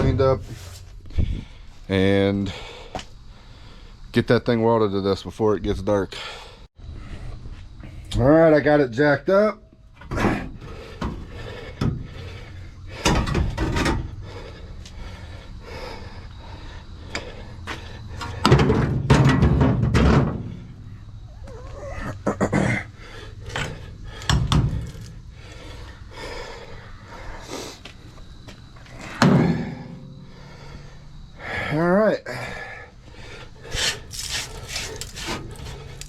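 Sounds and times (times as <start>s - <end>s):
metal clunks and knocks: 13.0s - 14.1s, 18.2s - 20.7s, 23.5s - 25.1s.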